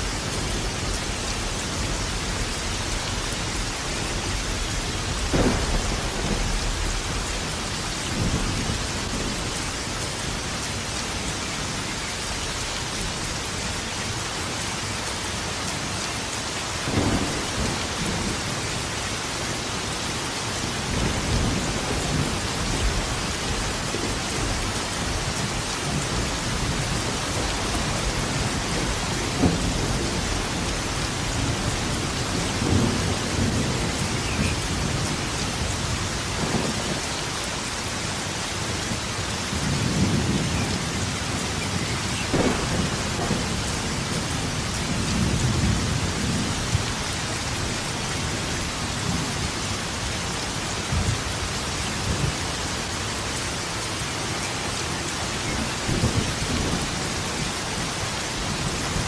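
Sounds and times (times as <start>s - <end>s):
heavy rain falling: 0.0s - 59.0s
thunder rumbling and cracking: 0.2s - 10.4s, 16.8s - 19.0s, 20.7s - 37.2s, 38.6s - 48.4s.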